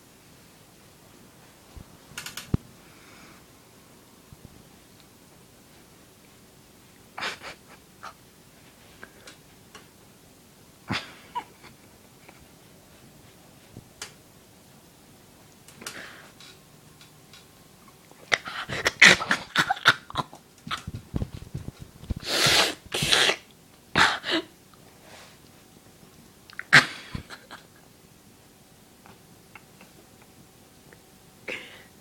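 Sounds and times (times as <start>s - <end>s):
cat hissing and spitting: 22.1s - 24.2s.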